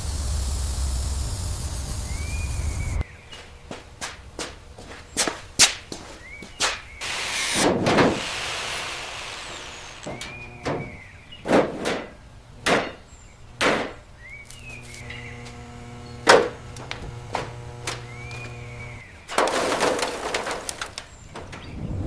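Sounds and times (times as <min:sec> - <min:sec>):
rough hissing noise: 0:00.0 - 0:03.0
sharp knocks: 0:10.0 - 0:13.0, 0:13.6 - 0:14.0.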